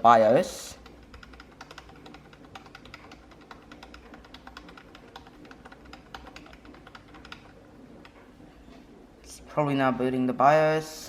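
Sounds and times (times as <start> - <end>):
keyboard key clicking rapidly: 0.6 - 8.2.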